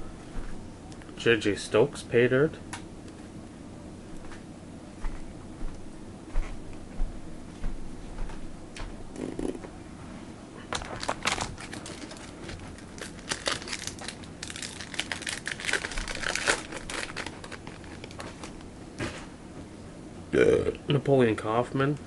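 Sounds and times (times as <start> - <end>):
wrapper crinkling and tearing: 10.7 - 18.6.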